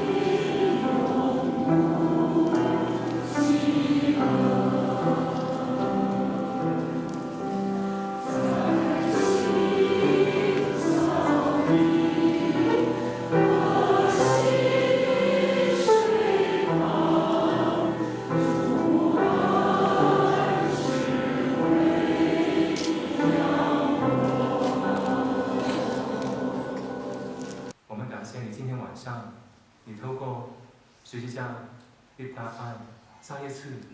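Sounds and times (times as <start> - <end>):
choir singing a hymn: 0.0 - 27.8.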